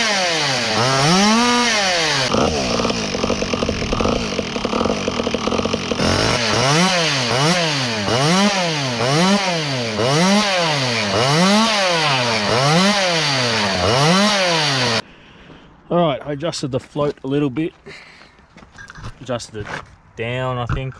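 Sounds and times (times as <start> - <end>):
chainsaw engine revving: 0.0 - 15.0.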